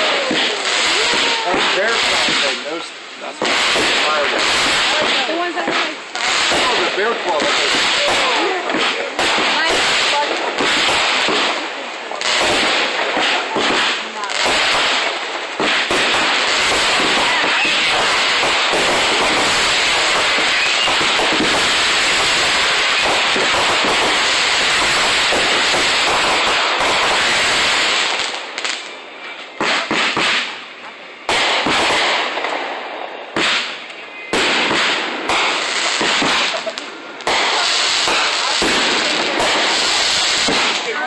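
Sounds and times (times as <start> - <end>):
fireworks crackling and popping: 0.0 - 41.0
fireworks loud bangs: 0.0 - 41.0.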